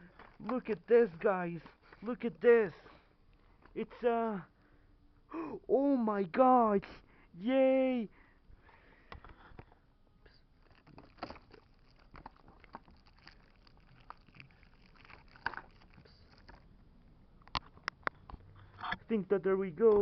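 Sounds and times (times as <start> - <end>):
packaging rustling and clicking: 10.6 - 16.7.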